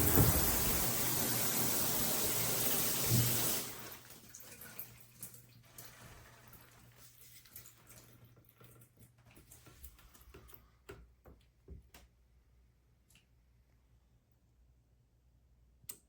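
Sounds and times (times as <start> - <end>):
shower water hissing: 0.0 - 4.1.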